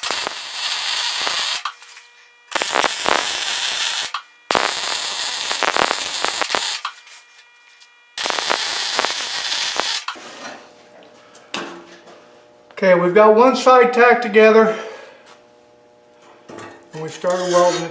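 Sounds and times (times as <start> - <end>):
electric welding arc crackling: 0.0 - 10.2.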